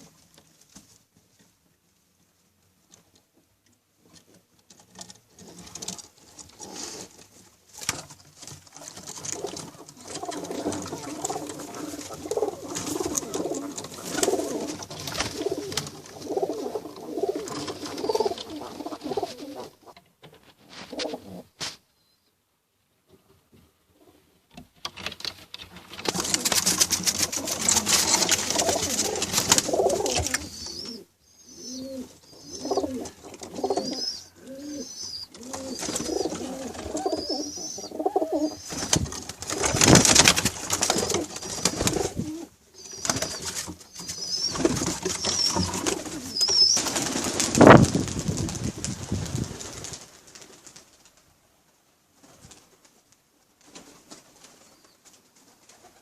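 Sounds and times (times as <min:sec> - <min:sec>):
pigeons cooing: 0:09.2 - 0:19.8, 0:26.1 - 0:40.1, 0:40.8 - 0:47.8
loud rustling bursts: 0:25.0 - 0:30.4, 0:38.7 - 0:42.4, 0:43.0 - 0:51.2.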